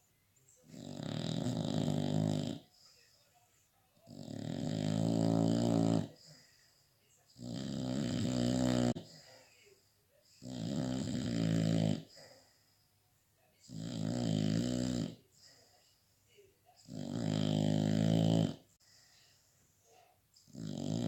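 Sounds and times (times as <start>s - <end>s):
dog snoring: 0.6s - 2.8s, 4.0s - 6.5s, 7.3s - 9.4s, 10.3s - 12.5s, 13.6s - 15.6s, 16.8s - 18.8s, 20.4s - 21.0s.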